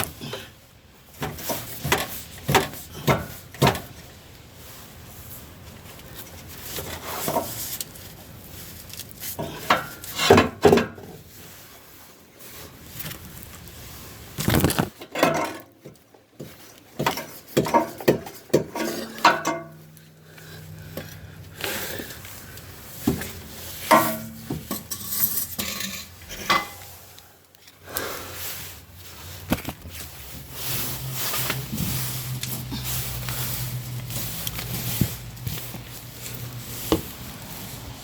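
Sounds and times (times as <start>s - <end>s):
hand tools clinking and clattering: 16.9s - 20.1s, 23.1s - 27.0s.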